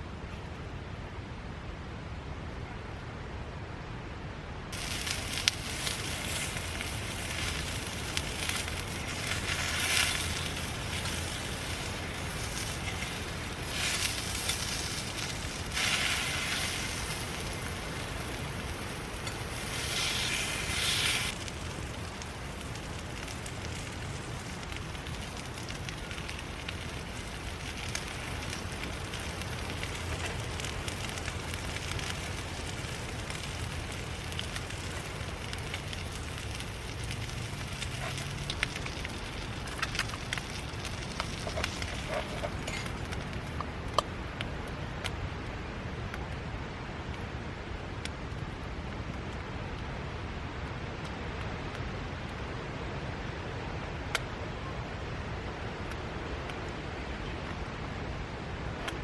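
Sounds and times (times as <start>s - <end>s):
wood fire crackling and popping: 4.7s - 59.0s
hiss: 4.8s - 36.4s.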